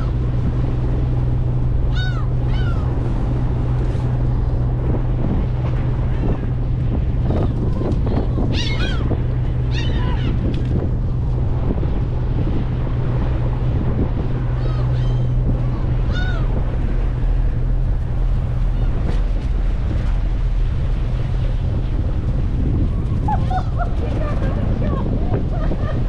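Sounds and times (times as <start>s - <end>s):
boat engine hum: 0.0s - 26.0s
water rushing past hull: 0.0s - 26.0s
wind buffeting microphone: 0.0s - 26.0s
gull cries: 1.8s - 3.0s, 8.5s - 10.4s, 14.6s - 16.6s.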